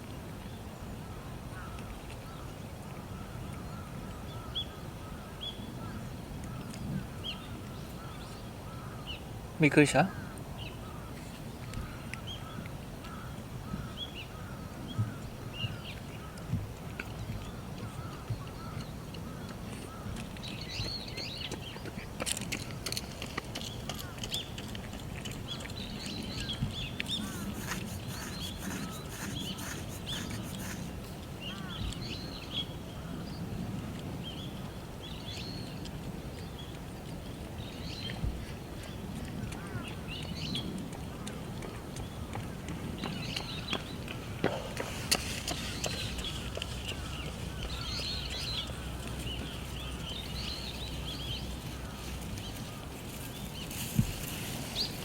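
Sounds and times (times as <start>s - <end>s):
outdoor background noise: 0.0s - 55.0s
small birds chirping: 25.4s - 32.7s, 42.0s - 54.0s.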